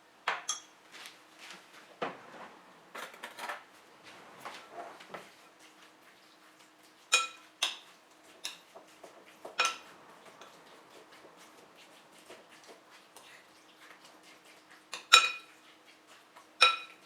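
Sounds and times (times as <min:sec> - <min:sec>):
dishes and cutlery clinking: 0:00.3 - 0:00.8, 0:02.0 - 0:05.2, 0:07.1 - 0:12.6, 0:15.0 - 0:15.6, 0:16.6 - 0:17.0.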